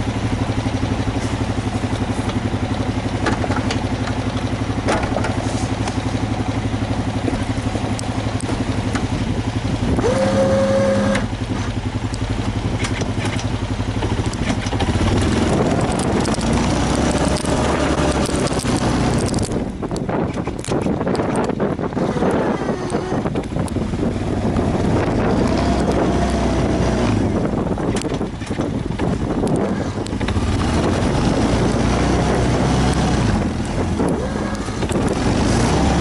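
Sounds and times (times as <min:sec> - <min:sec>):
engine running with fast pulse: 0:00.0 - 0:36.0.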